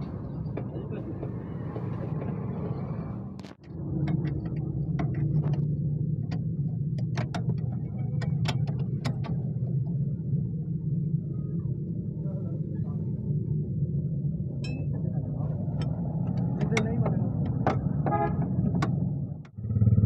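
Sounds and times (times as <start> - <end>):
car engine droning: 0.0 - 20.0
sharp clicks and knocks: 3.4 - 9.9, 15.6 - 19.6.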